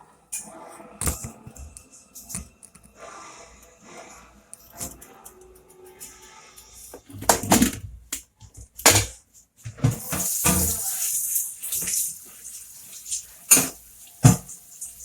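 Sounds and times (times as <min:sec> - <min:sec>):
kitchenware knocking and clattering: 0:07.0 - 0:10.8.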